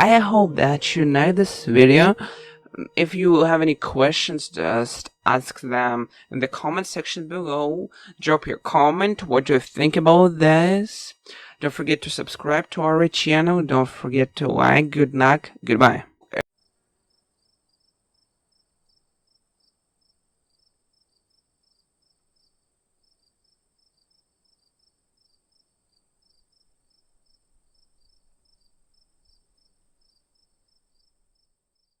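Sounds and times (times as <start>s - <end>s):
faint high chirping: 0.0s - 4.4s
faint high tone: 0.0s - 4.9s.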